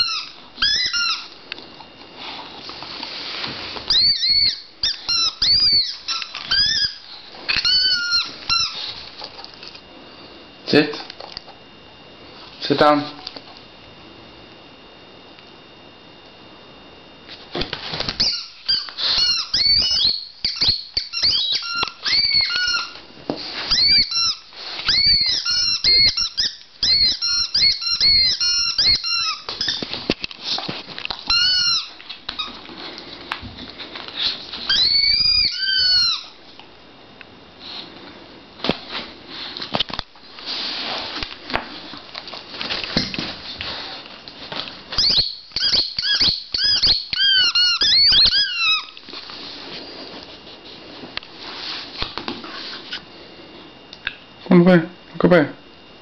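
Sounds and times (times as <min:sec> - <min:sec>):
squeaky toy squeaking: 0:00.0 - 0:01.3, 0:03.9 - 0:08.8, 0:18.2 - 0:23.0, 0:23.7 - 0:29.8, 0:31.3 - 0:32.5, 0:34.7 - 0:36.3, 0:45.0 - 0:48.9.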